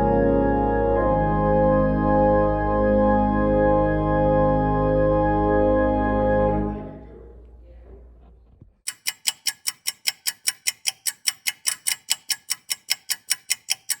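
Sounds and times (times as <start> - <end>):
organ chord: 0.0 - 7.0
loud bright ticking: 8.9 - 14.0.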